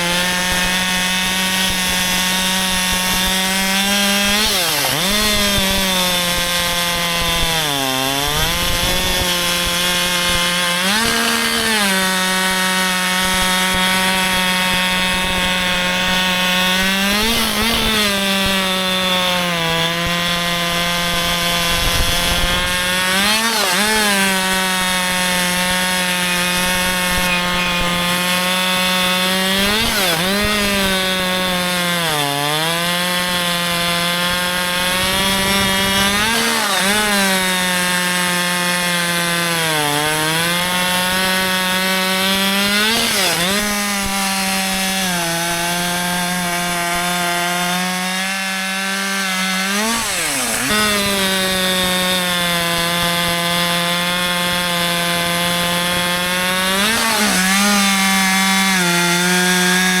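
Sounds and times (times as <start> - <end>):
chainsaw cutting wood: 0.0 - 60.0.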